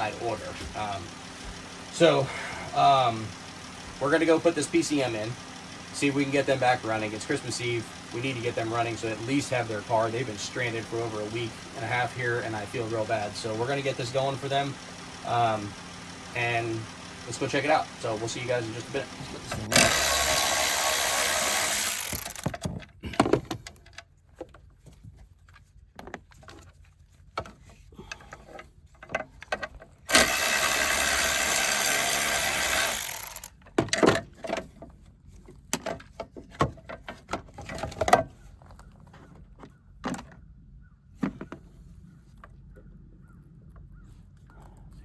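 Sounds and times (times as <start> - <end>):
cordless power tool whirring: 19.2 - 22.6, 30.1 - 33.6
hand tools clicking and knocking: 19.5 - 24.6, 27.4 - 34.8.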